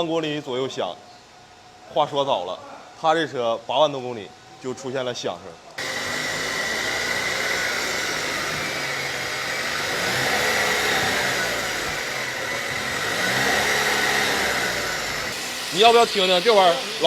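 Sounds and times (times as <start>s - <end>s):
car transmission whining: 5.8s - 15.4s.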